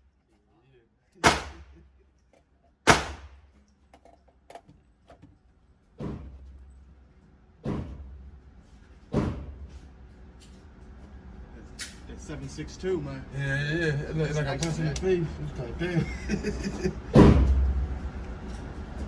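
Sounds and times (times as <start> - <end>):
gunshots with echo: 1.2 - 1.8, 2.9 - 3.4.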